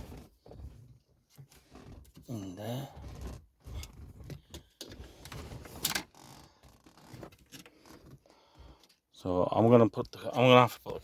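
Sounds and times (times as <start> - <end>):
plastic trim rustling and scraping: 0.0 - 8.3.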